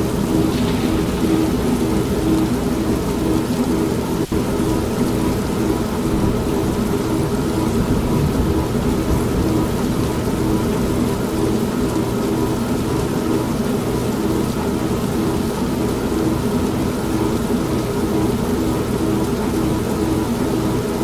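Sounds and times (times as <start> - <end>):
rumbling thunder: 0.0 - 12.5
heavy rain: 0.0 - 21.0
washing machine humming: 0.0 - 21.0.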